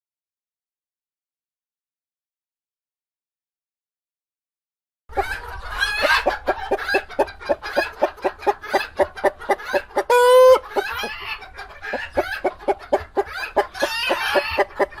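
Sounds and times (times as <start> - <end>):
hens clucking: 5.1 - 15.0
loud drawn-out hen call: 5.1 - 15.0.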